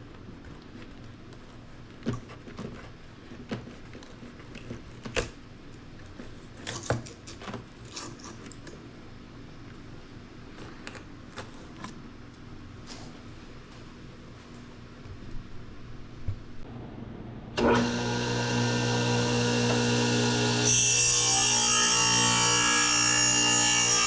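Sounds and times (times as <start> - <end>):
steady low hum: 8.8 - 20.5.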